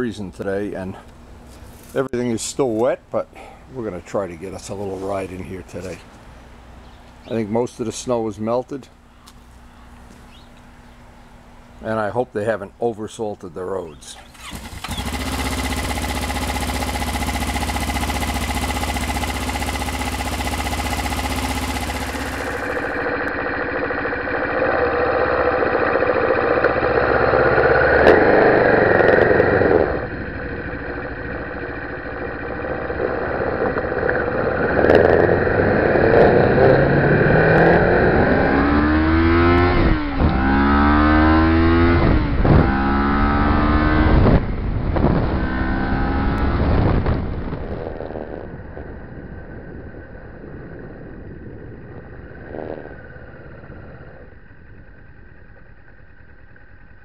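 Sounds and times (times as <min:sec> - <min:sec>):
motorcycle engine accelerating: 0:14.2 - 0:57.0.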